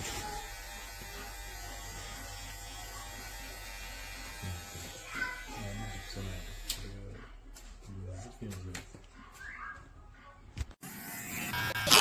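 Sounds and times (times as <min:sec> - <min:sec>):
electric hair clipper buzzing: 0:00.0 - 0:06.8, 0:10.9 - 0:12.0.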